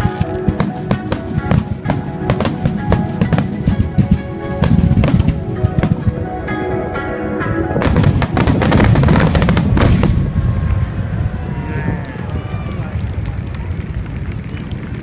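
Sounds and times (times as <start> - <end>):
fireworks bangs and crackles: 0.0 - 6.5, 7.8 - 15.0
deep rumble: 7.8 - 15.0.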